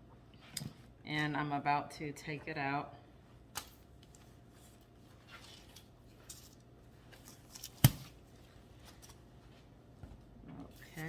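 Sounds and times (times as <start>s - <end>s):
rustling and handling: 3.3s - 11.0s.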